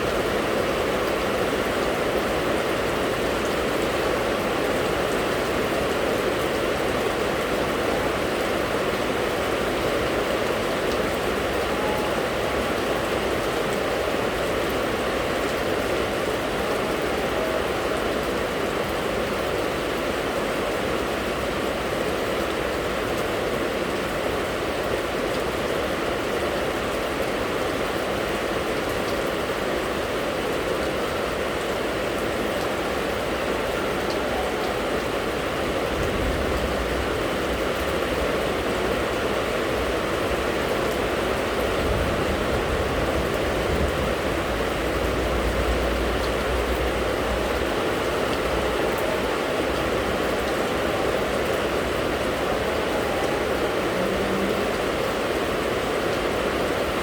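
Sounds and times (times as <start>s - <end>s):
steady rain falling: 0.0s - 57.0s
low rumble: 42.0s - 47.9s.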